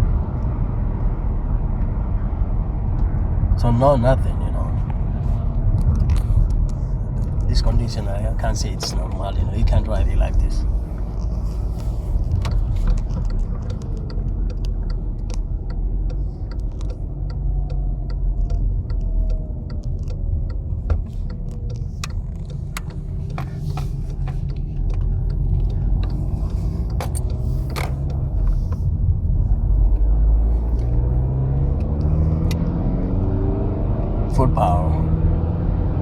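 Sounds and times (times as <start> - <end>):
car engine and road noise: 0.0 - 36.0
light clicks and rattles: 5.6 - 29.0.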